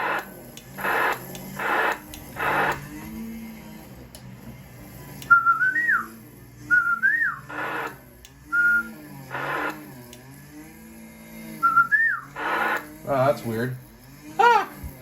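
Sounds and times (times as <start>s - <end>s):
person whistling: 5.3s - 6.1s, 6.7s - 7.4s, 11.6s - 12.2s.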